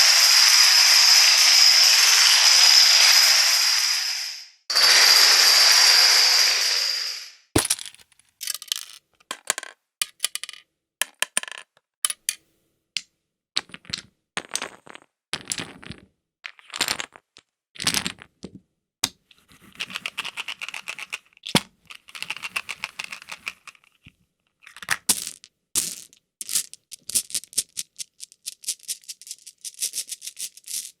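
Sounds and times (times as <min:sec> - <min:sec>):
game pieces clicking: 0:07.6 - 0:12.4, 0:19.8 - 0:24.0, 0:24.7 - 0:31.0
game pieces rattling: 0:07.6 - 0:12.4, 0:19.6 - 0:24.0, 0:24.7 - 0:31.0.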